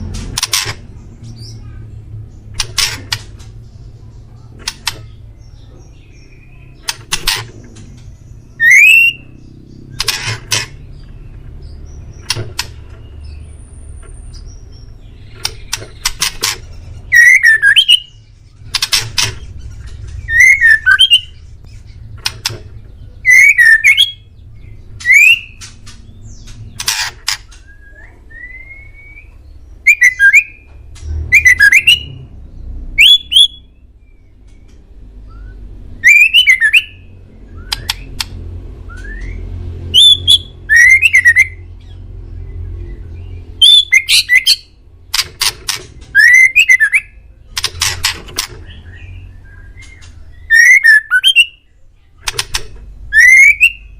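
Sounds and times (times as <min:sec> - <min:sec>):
bird singing sharp whistles: 0:08.6 - 0:09.2, 0:20.3 - 0:21.3, 0:46.2 - 0:47.2, 0:50.5 - 0:51.6, 0:53.1 - 0:53.9.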